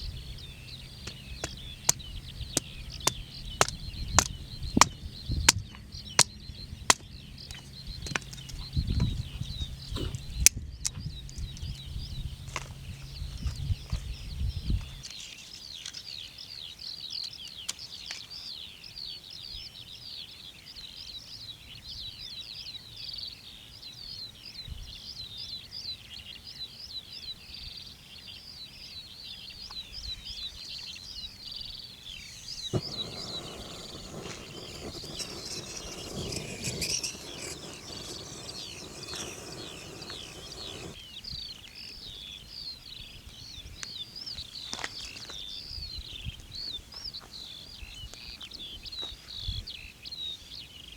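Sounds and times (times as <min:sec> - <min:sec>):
small birds chirping: 0:00.0 - 0:50.9
steady hiss: 0:32.1 - 0:41.0.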